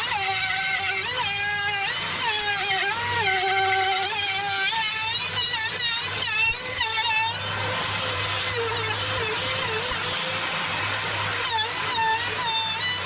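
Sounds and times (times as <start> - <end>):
electric motor running: 0.0 - 13.0.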